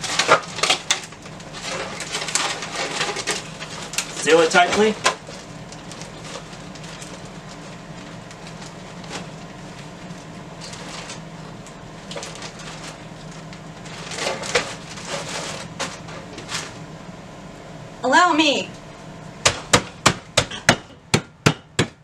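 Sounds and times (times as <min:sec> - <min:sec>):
plastic bag crinkling: 0:00.0 - 0:16.8
low steady hum: 0:00.0 - 0:22.0.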